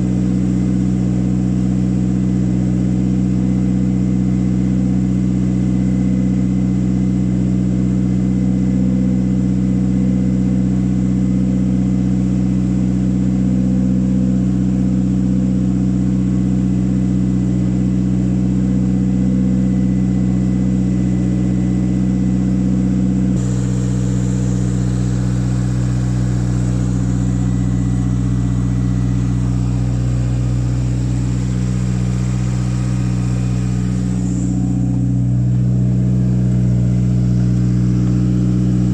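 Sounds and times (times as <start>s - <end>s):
car engine idling: 0.0s - 38.9s.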